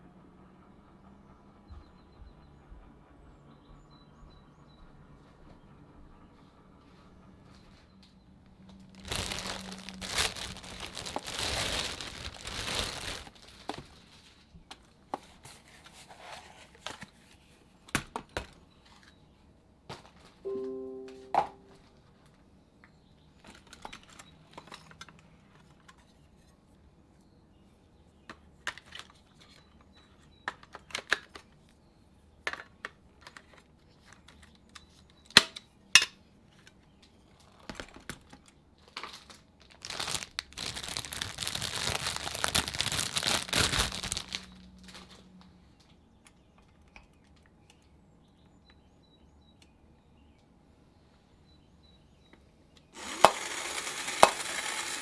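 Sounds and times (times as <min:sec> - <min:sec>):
packing paper crinkling and tearing: 0:08.8 - 0:14.4, 0:38.8 - 0:45.2.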